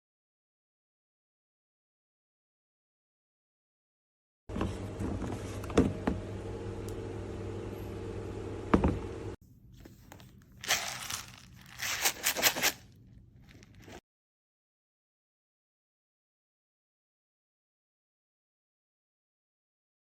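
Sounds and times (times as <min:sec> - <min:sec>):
steady low hum: 0:04.5 - 0:14.0
packaging crinkling and scraping: 0:09.8 - 0:14.0.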